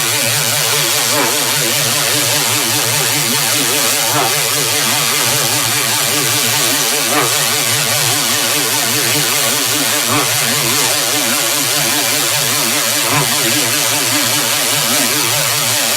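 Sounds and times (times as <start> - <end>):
distorted warbling buzz: 0.0 - 15.9.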